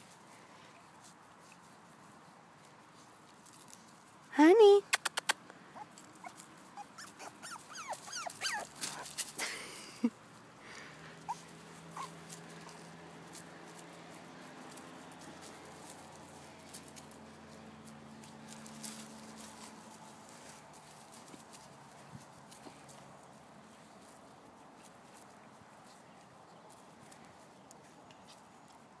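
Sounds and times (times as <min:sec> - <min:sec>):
puppies whimpering: 0:05.8 - 0:08.8, 0:11.2 - 0:12.8.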